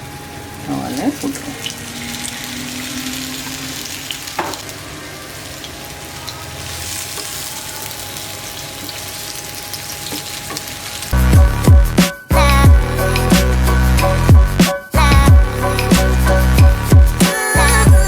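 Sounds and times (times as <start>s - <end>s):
prawns sizzling in oil: 0.0s - 11.6s
loud music: 11.2s - 18.0s.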